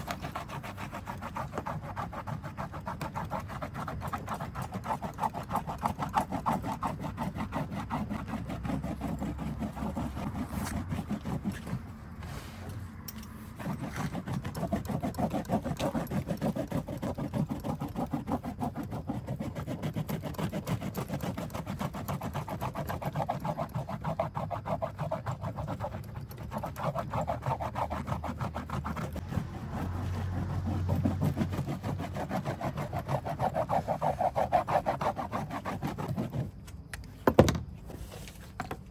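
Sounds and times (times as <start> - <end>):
fast rhythmic scrubbing: 13.6 - 36.0.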